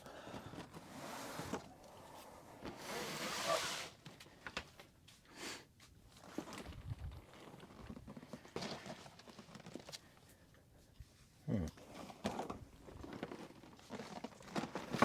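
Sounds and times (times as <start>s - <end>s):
cardboard boxes sliding and rubbing: 0.8s - 4.0s.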